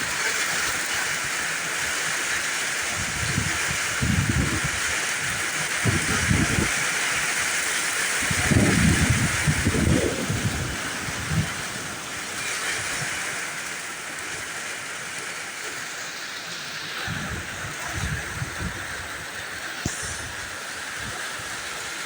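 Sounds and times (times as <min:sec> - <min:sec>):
heavy rain hissing: 0:00.0 - 0:22.0
wind buffeting microphone: 0:02.9 - 0:13.4, 0:17.0 - 0:21.7.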